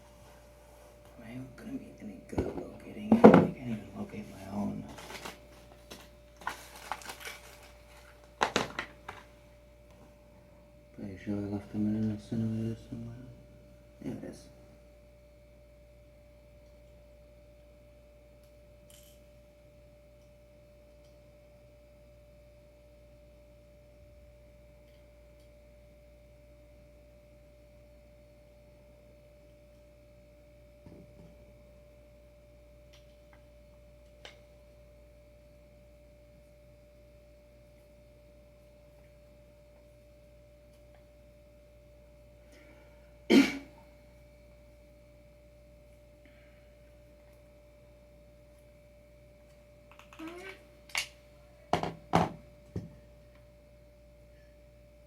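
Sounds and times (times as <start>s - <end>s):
faint high-pitched whine: 0.0s - 55.0s.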